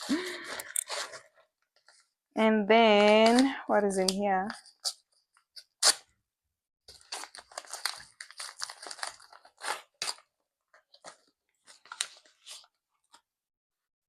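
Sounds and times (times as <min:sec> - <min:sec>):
packaging crinkling and rustling: 0:06.9 - 0:13.2.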